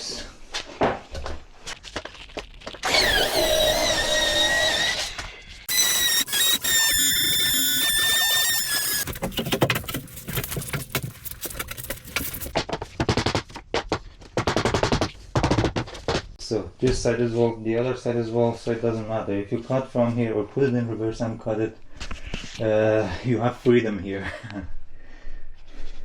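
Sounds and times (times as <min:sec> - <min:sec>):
power saw cutting plank: 0:02.8 - 0:09.9.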